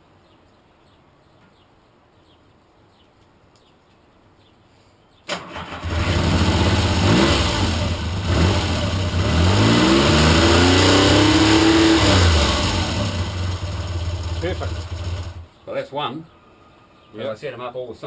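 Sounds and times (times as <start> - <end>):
motorcycle engine starting and revving: 5.3 - 15.5.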